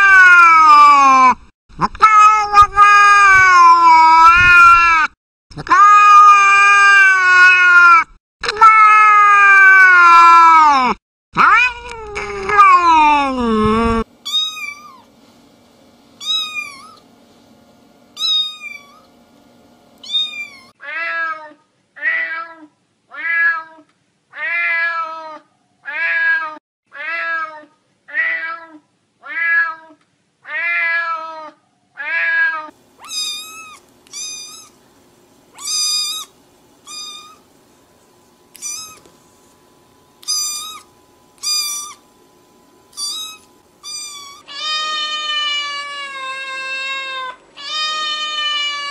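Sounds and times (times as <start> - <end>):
cats meowing: 14.3 - 15.1, 16.2 - 17.0, 20.0 - 21.3, 30.5 - 34.8, 35.6 - 37.4, 38.5 - 39.1, 40.2 - 42.0, 42.9 - 48.9
faint steady hum: 32.7 - 48.9.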